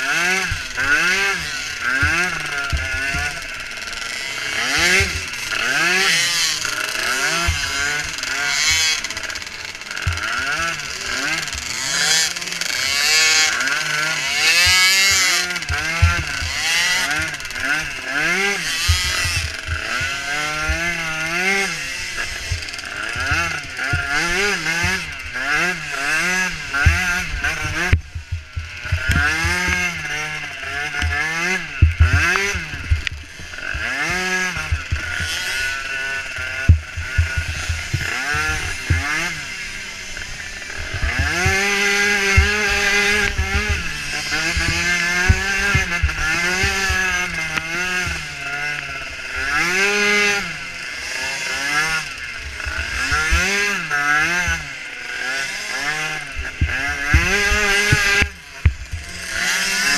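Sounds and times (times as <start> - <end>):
small atv engine revving: 0.0 - 59.9
knocks from rough ground: 18.6 - 20.9, 36.6 - 39.4, 40.9 - 48.3.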